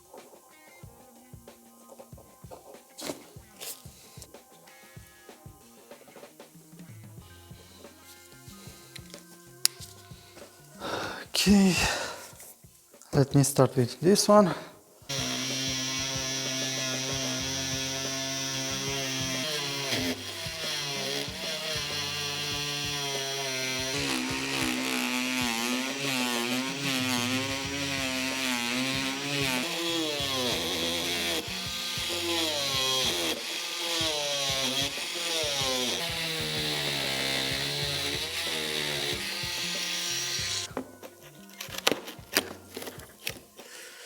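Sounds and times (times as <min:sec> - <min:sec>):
power tool cutting plastic: 0:15.1 - 0:40.8, 0:41.4 - 0:43.8.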